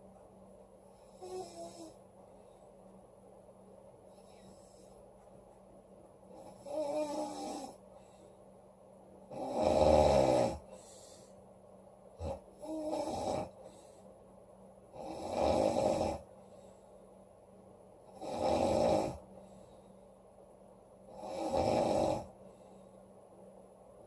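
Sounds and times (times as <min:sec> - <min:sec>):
woman snoring loudly: 0:01.2 - 0:02.0, 0:06.4 - 0:07.8, 0:09.3 - 0:10.7, 0:12.2 - 0:13.6, 0:15.0 - 0:16.3, 0:18.2 - 0:19.2, 0:21.1 - 0:22.3.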